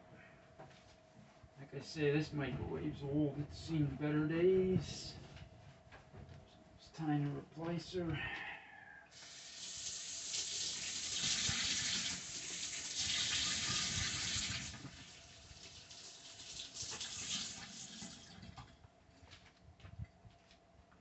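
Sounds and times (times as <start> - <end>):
water running from a tap: 9.1 - 18.6.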